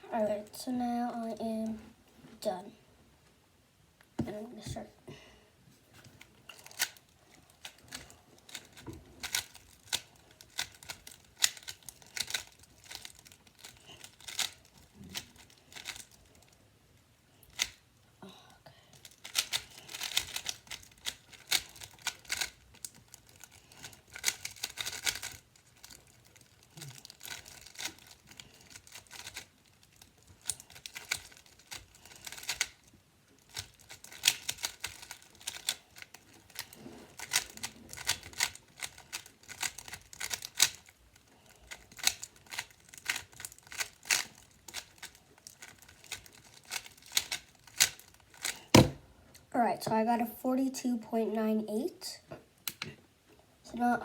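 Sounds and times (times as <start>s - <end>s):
speed cube clicking turns: 6.6s - 7.0s, 7.6s - 16.4s, 17.4s - 17.8s, 19.0s - 48.7s.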